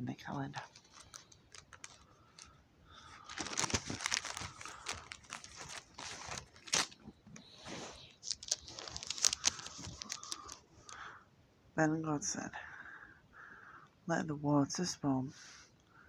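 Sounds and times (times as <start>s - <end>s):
paper rustling and crinkling: 0.3s - 11.1s.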